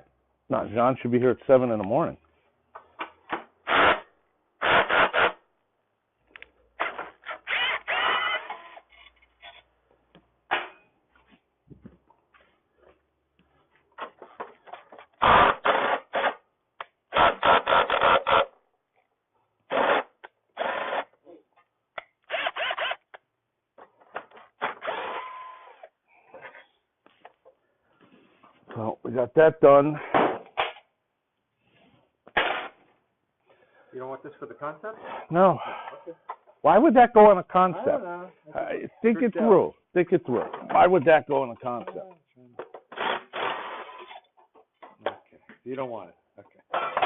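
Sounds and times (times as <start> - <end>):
power drill bursts: 3.6 - 5.4, 6.8 - 9.0, 15.2 - 16.4, 17.1 - 18.5, 19.7 - 21.1, 22.2 - 23.1, 24.6 - 25.9, 42.9 - 44.2.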